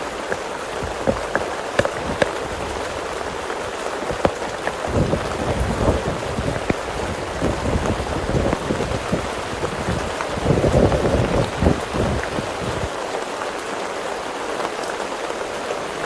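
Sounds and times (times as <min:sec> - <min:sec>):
sharp single drips tapping: 0:00.0 - 0:04.9
heavy rain on a tent: 0:00.0 - 0:16.0.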